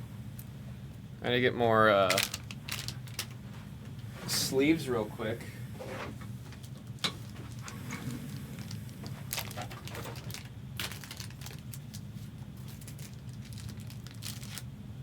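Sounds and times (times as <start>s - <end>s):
plastic sleeves rustling and crinkling: 2.1s - 4.7s, 5.8s - 14.7s
low hum: 2.2s - 15.0s.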